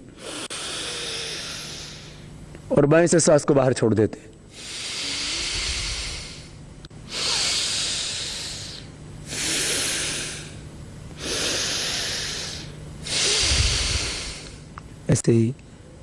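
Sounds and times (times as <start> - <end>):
breathing through nostril: 0.2 - 2.3, 4.5 - 10.6, 11.2 - 14.6.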